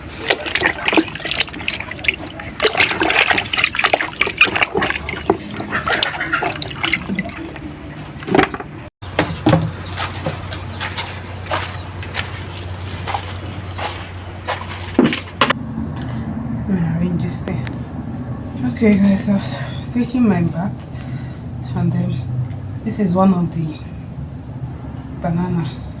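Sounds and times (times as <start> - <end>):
water splashing in a basin: 0.0 - 15.3
knocks and rubbing: 2.9 - 16.2
low hum: 4.9 - 26.0.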